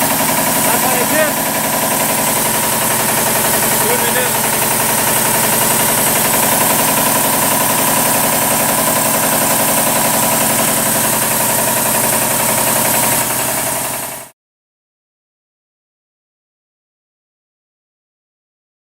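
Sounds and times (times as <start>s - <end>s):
air compressor with rod knock: 0.0s - 14.3s.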